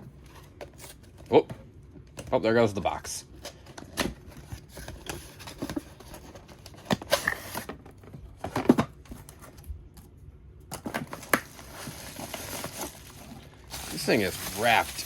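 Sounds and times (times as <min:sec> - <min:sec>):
paper or plastic rustling: 0:10.9 - 0:15.0.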